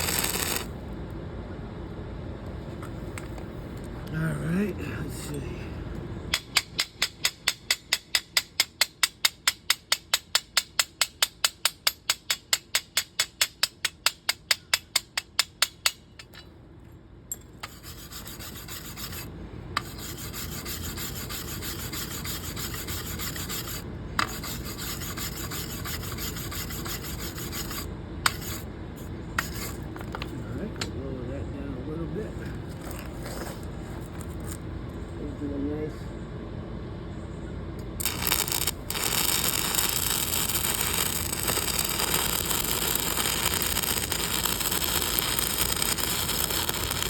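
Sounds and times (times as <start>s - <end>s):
welding arc popping and crackling: 0.0s - 0.8s, 38.0s - 47.0s.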